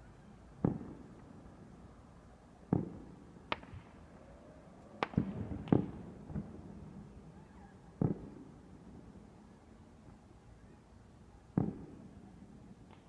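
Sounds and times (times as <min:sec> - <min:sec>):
fireworks bangs: 0:05.0 - 0:06.7.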